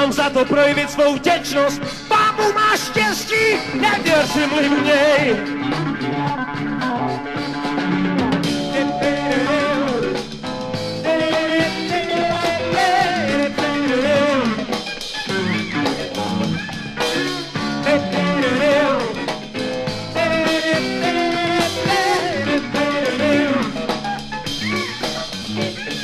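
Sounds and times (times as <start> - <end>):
band playing rock song: 0.0 - 26.0.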